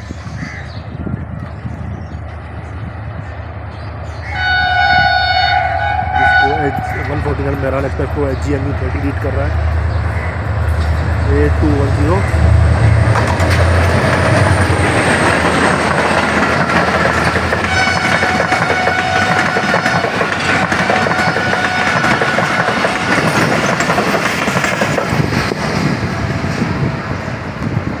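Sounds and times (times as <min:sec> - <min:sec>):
train coaches rolling past: 0:00.0 - 0:28.0
wheels clattering over rail joints: 0:09.6 - 0:26.8.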